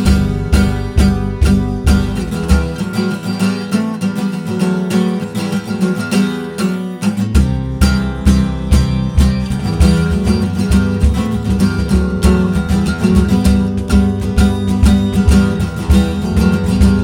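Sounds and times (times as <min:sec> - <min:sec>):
deep bass: 0:00.0 - 0:03.0, 0:07.4 - 0:17.0
strummed acoustic guitar: 0:00.0 - 0:17.0.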